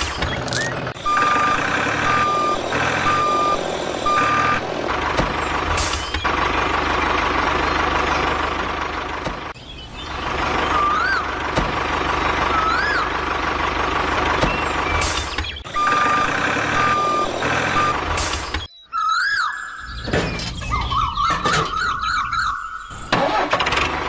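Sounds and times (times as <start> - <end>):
engine-like drone with buzz: 0.0 - 18.7, 19.9 - 24.0
vehicle reversing alarm beeping: 0.3 - 6.3, 14.6 - 18.8
rising-and-falling chirp: 18.6 - 23.1.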